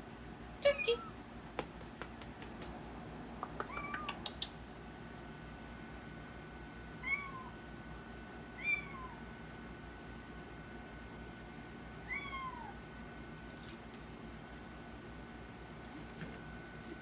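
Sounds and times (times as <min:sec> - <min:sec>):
cat meowing: 0:03.6 - 0:04.2, 0:08.6 - 0:09.2, 0:12.0 - 0:12.8.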